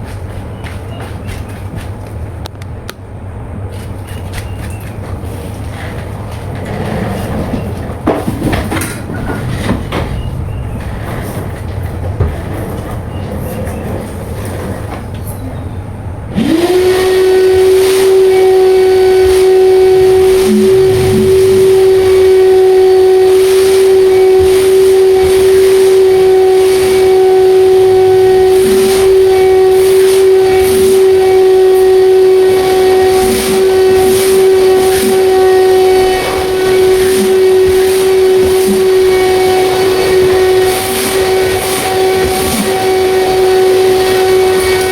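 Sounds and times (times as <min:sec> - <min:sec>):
wet vacuum cleaner whine: 0:16.3 - 0:44.9.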